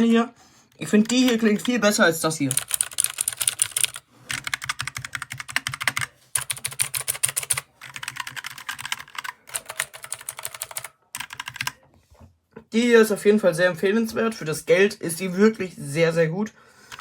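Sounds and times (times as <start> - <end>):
fast typing on keyboard: 0.8 - 11.8.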